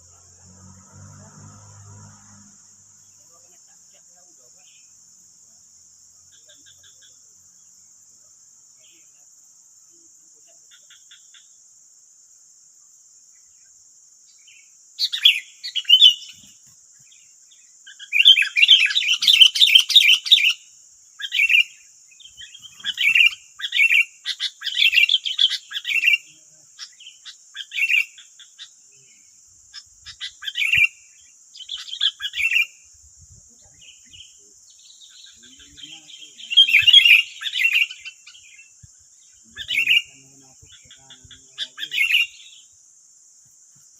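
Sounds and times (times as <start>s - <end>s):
high insect drone: 0.0s - 43.9s
bulbuls chattering calls: 21.2s - 28.8s, 33.7s - 42.6s.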